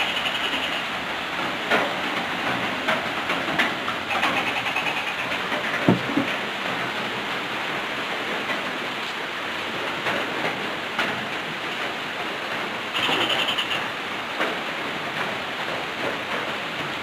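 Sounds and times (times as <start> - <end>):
rain falling: 0.0 - 17.0
raindrop taps: 1.6 - 4.4, 5.5 - 7.0, 9.8 - 12.7, 13.7 - 17.0.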